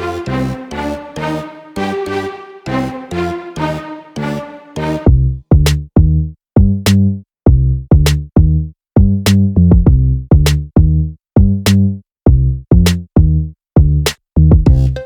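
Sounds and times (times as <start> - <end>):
electronic drum-machine beat: 14.6 - 15.0.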